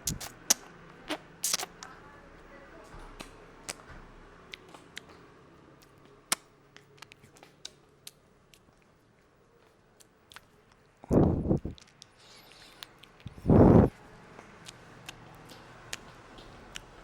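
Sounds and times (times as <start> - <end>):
fingers crackling through hair: 0.0 - 1.8.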